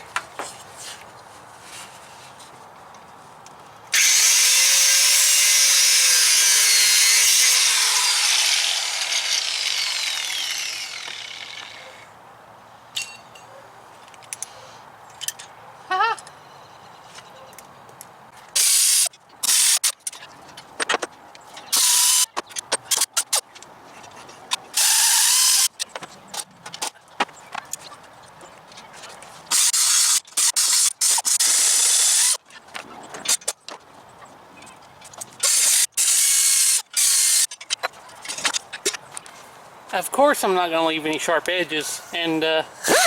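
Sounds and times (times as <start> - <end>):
power tool cutting metal: 4.0 - 11.8, 24.8 - 25.7, 29.5 - 32.4, 35.4 - 37.5
motor whine spinning up: 7.8 - 11.8.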